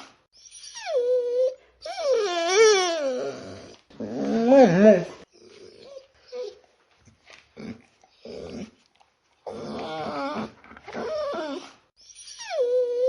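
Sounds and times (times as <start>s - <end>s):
dog whining: 0.0s - 6.7s, 9.4s - 13.0s.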